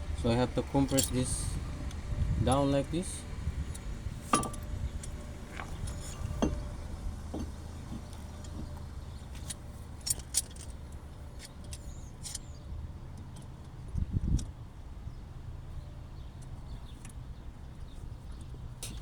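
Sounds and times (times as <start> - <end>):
steady low rumble: 0.0 - 11.3
light metallic clicks and clinks: 0.4 - 14.6, 17.8 - 19.0.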